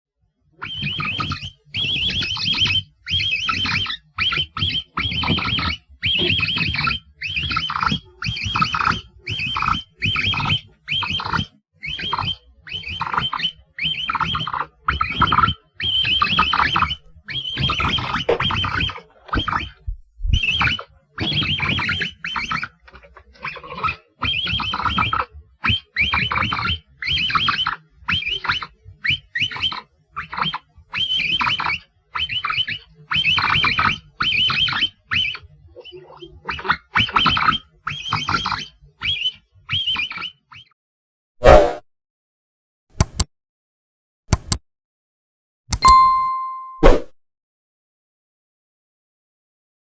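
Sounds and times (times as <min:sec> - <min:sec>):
capybara squeaky calls: 0:00.6 - 0:19.8.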